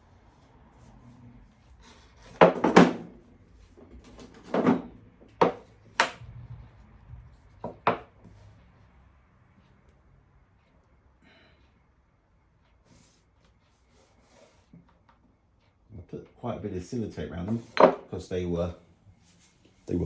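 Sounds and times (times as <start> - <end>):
hard objects knocking together: 4.1 - 6.2.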